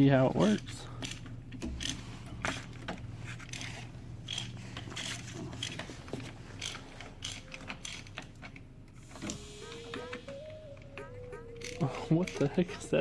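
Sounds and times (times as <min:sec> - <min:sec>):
socket ratchet clicking: 0:06.6 - 0:08.6.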